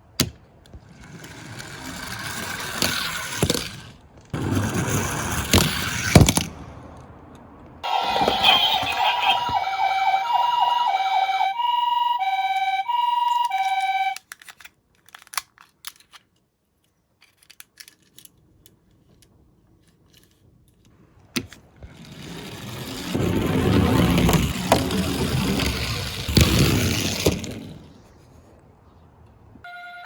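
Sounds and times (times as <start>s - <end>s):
rising rumble: 6.5s - 12.8s, 21.9s - 28.1s
toy two-tone siren: 7.8s - 14.2s, 29.6s - 30.0s
plastic toys clicking: 13.4s - 19.3s.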